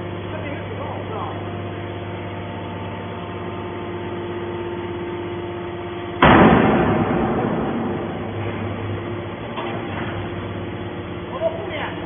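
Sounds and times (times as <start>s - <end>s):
hydraulic baler humming: 0.0s - 12.0s
sudden loud burst of noise: 6.2s - 9.5s.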